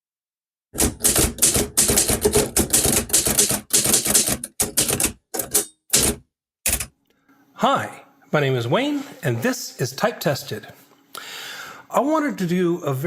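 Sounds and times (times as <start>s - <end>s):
typewriter keys clacking: 0.8s - 6.9s.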